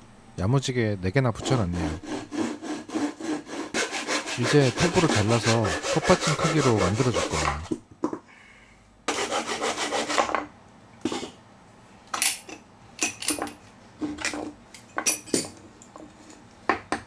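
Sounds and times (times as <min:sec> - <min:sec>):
hand saw cutting wood: 0:01.4 - 0:07.8, 0:09.1 - 0:10.3.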